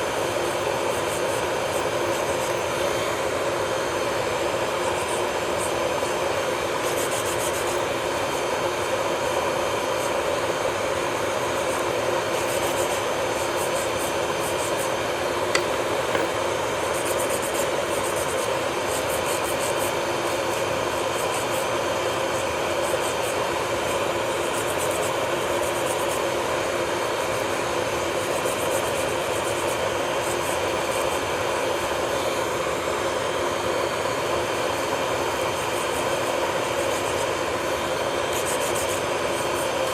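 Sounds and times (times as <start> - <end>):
electric nail drill whining: 12.3 - 17.8
drill bit grinding nail: 15.5 - 16.4.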